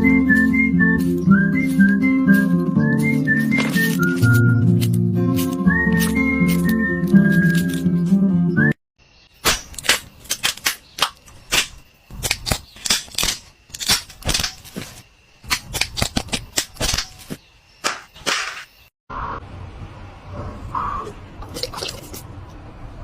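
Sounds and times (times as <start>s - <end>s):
sharp irregular clicks and knocks: 15.4s - 18.5s.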